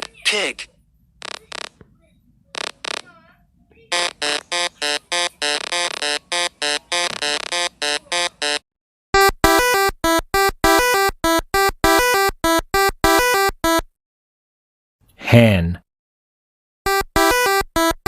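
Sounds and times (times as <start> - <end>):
staccato synthesizer music: 9.2 - 13.8, 16.9 - 18.0.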